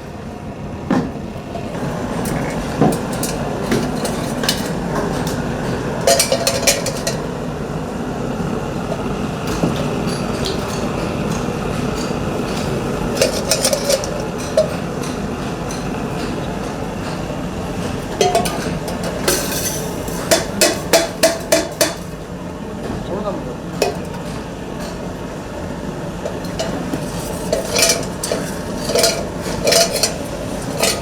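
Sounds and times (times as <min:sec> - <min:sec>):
steady noisy background: 0:00.0 - 0:31.0
metallic hits on copper: 0:18.1 - 0:22.2, 0:26.3 - 0:31.0.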